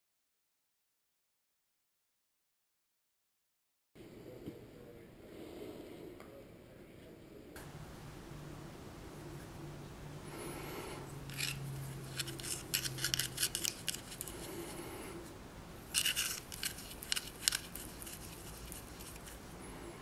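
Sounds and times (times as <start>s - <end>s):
rasping scraping strokes: 10.4s - 15.3s, 15.9s - 19.5s.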